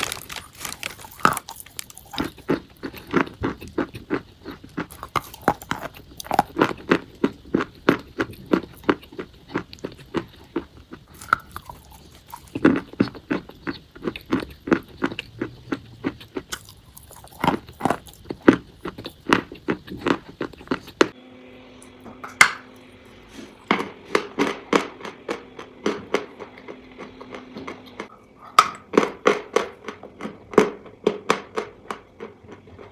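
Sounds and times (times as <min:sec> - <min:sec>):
person crunching chalk: 0:00.0 - 0:09.3
faint steady hum: 0:00.0 - 0:32.9.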